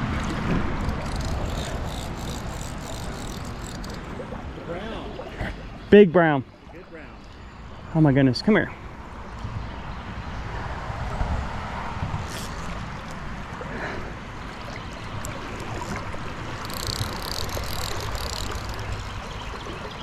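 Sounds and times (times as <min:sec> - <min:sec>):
faint ticks: 0:01.0 - 0:04.1, 0:16.6 - 0:19.2.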